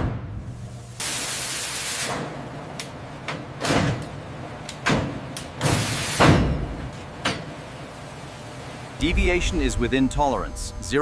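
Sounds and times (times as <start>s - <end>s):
machinery clanks and knocks: 3.2s - 4.2s, 4.8s - 7.6s
machinery thump: 4.8s - 6.9s.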